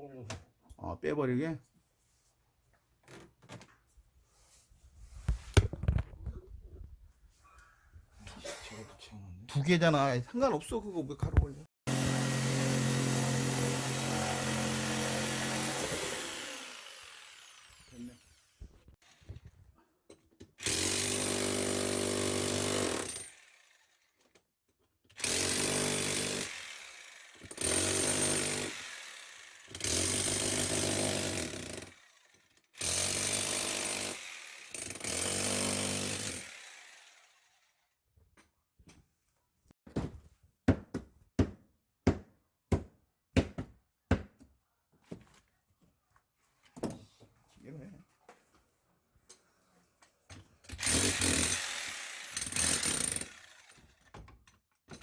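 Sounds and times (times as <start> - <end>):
electric power tool running: 11.9 - 18.6.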